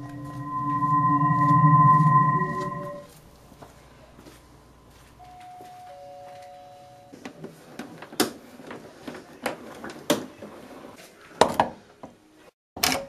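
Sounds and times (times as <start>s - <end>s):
two steady electronic tones: 0.0s - 3.0s.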